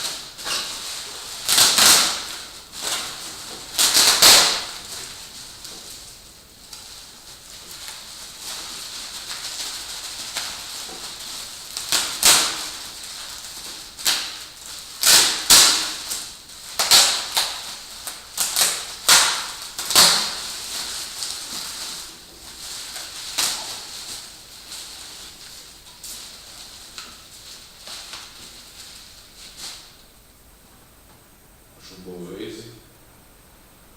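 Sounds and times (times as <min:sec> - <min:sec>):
packaging being torn off: 0:00.0 - 0:05.2, 0:07.8 - 0:24.3.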